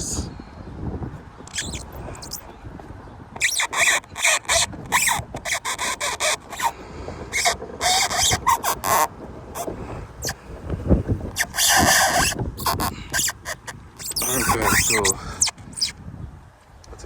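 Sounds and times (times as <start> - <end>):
bulb base squeaking against plastic: 1.5 - 2.5, 3.4 - 16.0.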